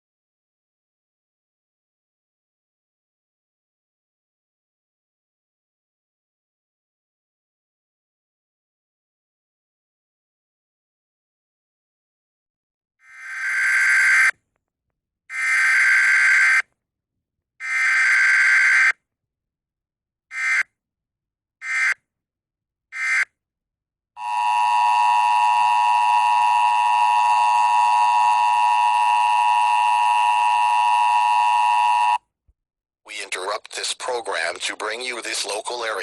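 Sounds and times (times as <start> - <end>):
two-tone attention signal: 24.2 - 32.2.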